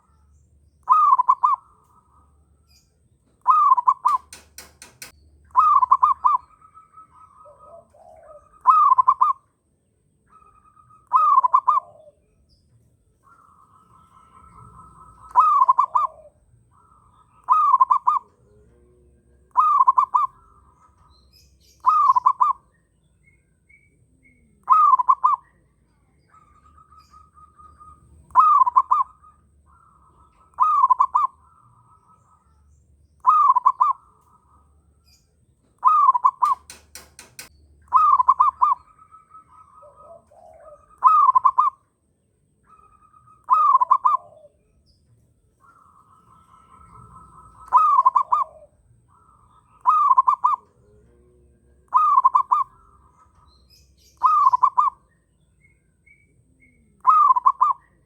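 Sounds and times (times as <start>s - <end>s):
dove cooing: 0.0s - 9.6s, 10.3s - 42.0s, 42.6s - 58.0s
sharp clicks: 4.0s - 5.2s, 36.4s - 37.6s.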